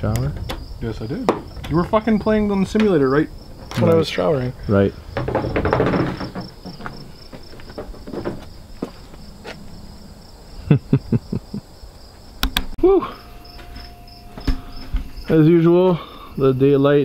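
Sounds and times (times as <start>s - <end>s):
crickets chirping: 0.0s - 17.0s
knocks: 0.3s - 3.0s, 5.1s - 9.0s
person exhaling: 12.8s - 13.3s, 15.9s - 16.4s.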